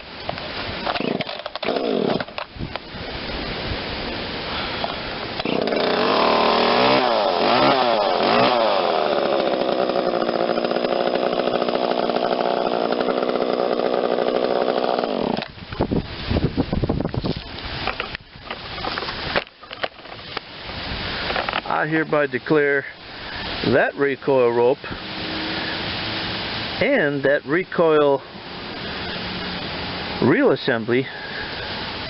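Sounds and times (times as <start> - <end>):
chainsaw revving and running: 0.8 - 2.4, 4.7 - 15.5, 25.0 - 26.4
chainsaw pull-starting: 0.8 - 2.5, 4.5 - 15.6, 21.2 - 21.8.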